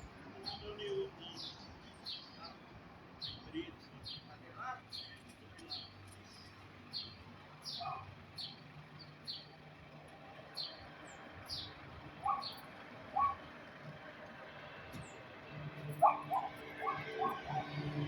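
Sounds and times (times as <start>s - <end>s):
bird chirping: 0.0s - 2.6s, 3.2s - 9.6s, 10.5s - 13.5s, 15.9s - 18.0s.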